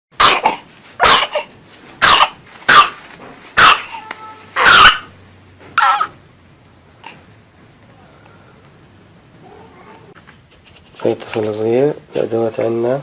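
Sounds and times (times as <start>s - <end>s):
child coughing: 0.2s - 2.9s, 3.6s - 5.0s.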